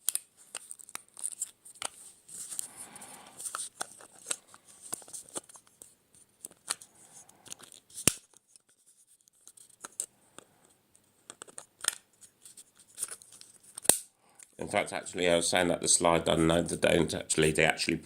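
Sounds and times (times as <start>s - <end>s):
plastic parts clicking into place: 7.5s - 8.7s, 9.4s - 14.5s.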